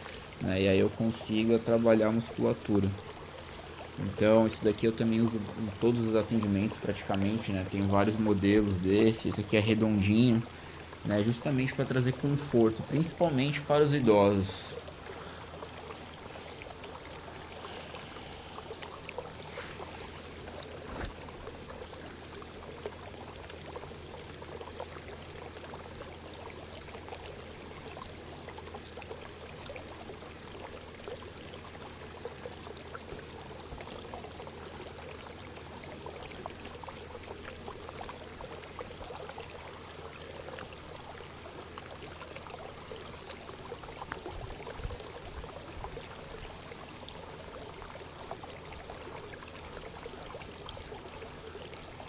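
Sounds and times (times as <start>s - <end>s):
trickling water: 0.0s - 52.0s
faint ticks: 31.7s - 52.0s.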